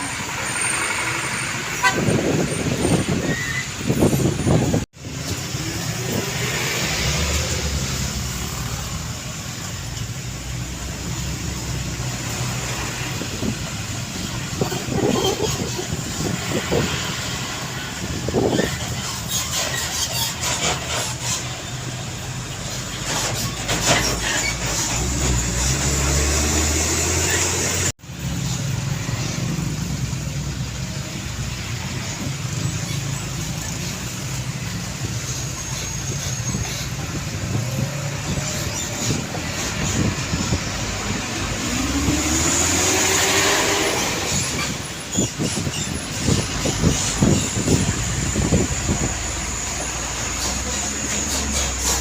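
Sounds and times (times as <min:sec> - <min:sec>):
truck engines running: 0:00.0 - 0:52.0
tyre and road noise: 0:00.0 - 0:52.0
engine rising in pitch: 0:25.1 - 0:27.9, 0:37.8 - 0:44.7.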